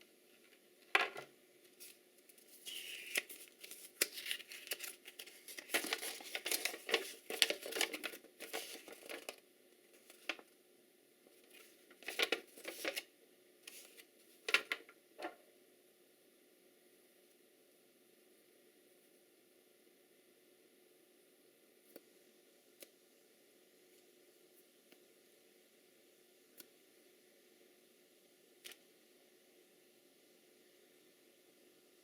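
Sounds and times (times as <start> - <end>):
packaging crinkling and rustling: 1.8 - 9.4, 11.5 - 13.1
packaging tearing: 2.5 - 9.4.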